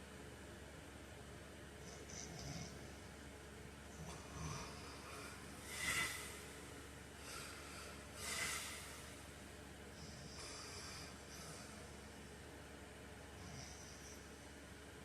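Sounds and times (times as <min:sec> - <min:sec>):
man breathing heavily in sleep: 0:04.0 - 0:12.3, 0:13.3 - 0:14.4.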